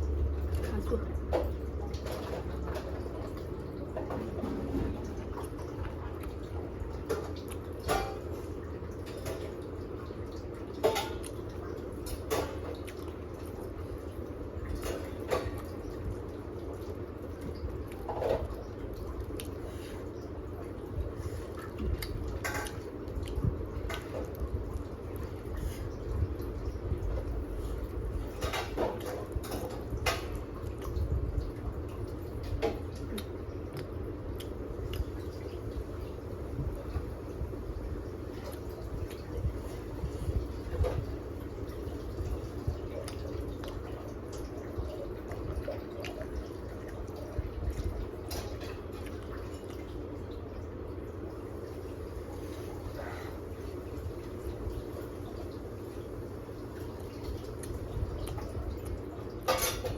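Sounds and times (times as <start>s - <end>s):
person chewing food: 17.4s - 25.9s, 33.0s - 37.2s, 45.3s - 47.0s.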